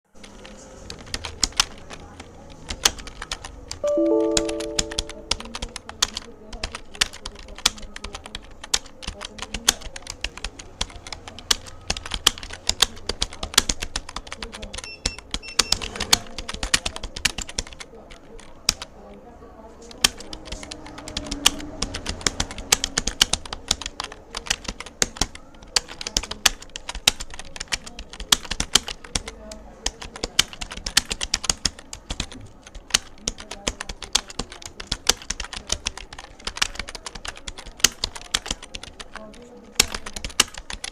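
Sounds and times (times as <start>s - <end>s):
fast typing on keyboard: 0.2s - 18.9s, 19.9s - 40.9s
chord of steady tones: 3.8s - 5.6s.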